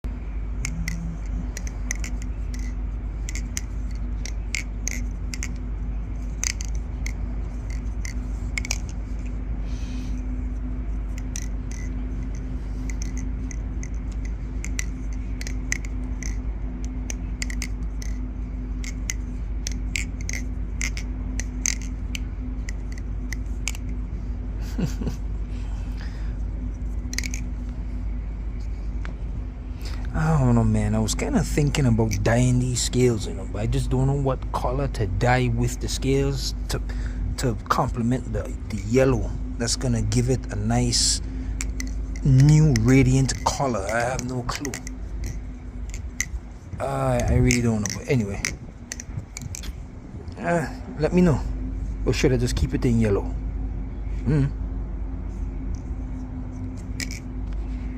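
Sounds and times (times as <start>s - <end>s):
low hum: 0.0s - 57.9s
butterfly knife clicking: 0.6s - 5.6s, 6.2s - 9.3s, 11.1s - 18.2s, 18.8s - 23.9s, 27.0s - 27.5s, 41.6s - 46.4s, 47.2s - 49.8s.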